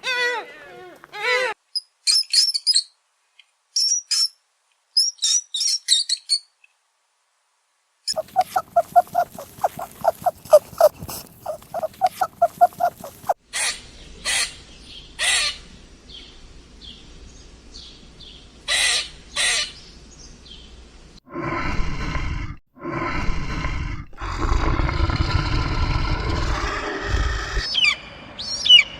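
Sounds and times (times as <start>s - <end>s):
deep animal roar: 8.2s - 13.4s, 21.3s - 27.7s
faint bird chirps: 8.2s - 13.4s
loud harsh bird squawks: 8.2s - 14.6s, 18.7s - 19.8s.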